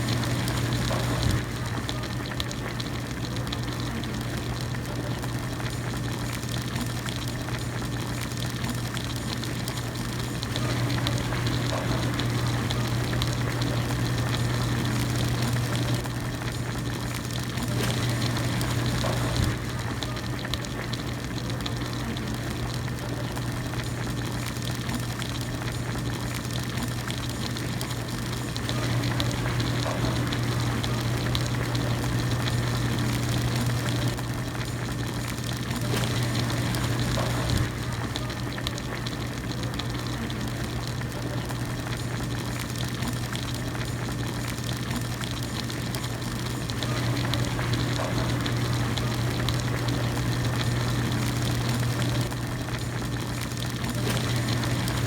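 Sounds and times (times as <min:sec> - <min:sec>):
broth bubbling at a rolling boil: 0:00.0 - 0:55.0.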